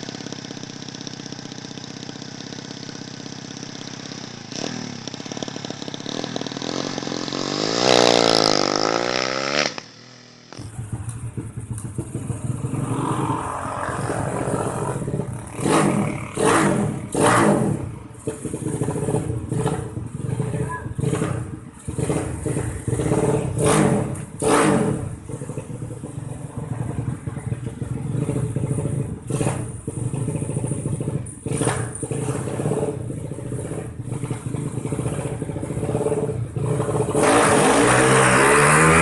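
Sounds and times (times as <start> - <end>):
motorcycle engine revving: 0.0 - 39.0
motorcycle engine short revs: 0.0 - 39.0.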